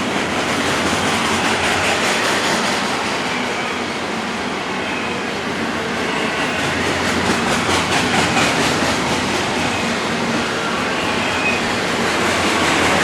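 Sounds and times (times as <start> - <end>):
freight train wheels rumbling: 0.0 - 13.0
wheels clickety-clack: 0.0 - 13.0.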